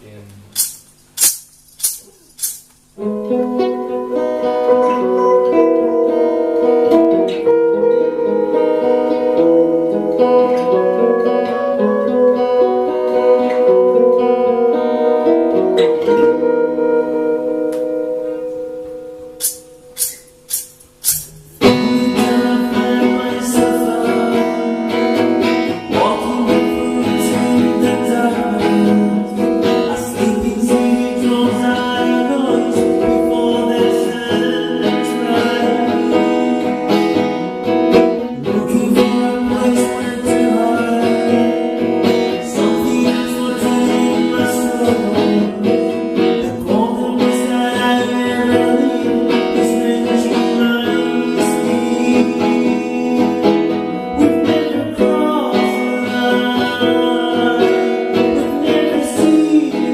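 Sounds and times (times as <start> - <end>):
acoustic guitar strumming: 0.0 - 59.9
person singing: 3.0 - 18.6, 21.3 - 59.9.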